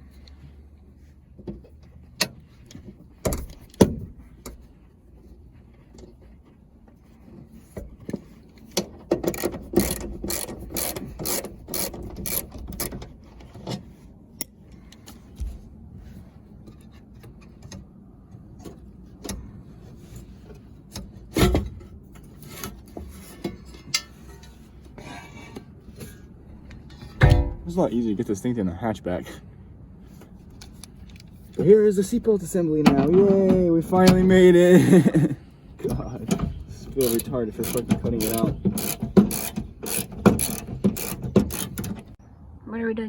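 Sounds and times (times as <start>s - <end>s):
seatbelt fittings clicking: 8.8s - 13.5s, 36.9s - 42.2s.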